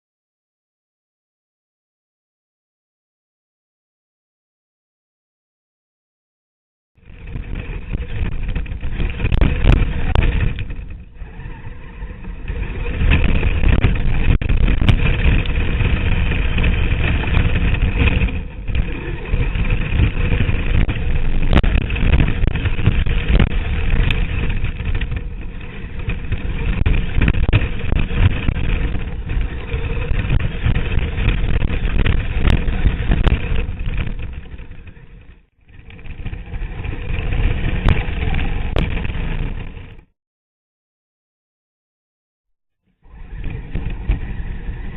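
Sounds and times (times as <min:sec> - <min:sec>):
rc truck motor whine: 0:07.0 - 0:40.0, 0:43.0 - 0:44.9
rushing rattling noise: 0:07.0 - 0:40.1, 0:43.0 - 0:44.9.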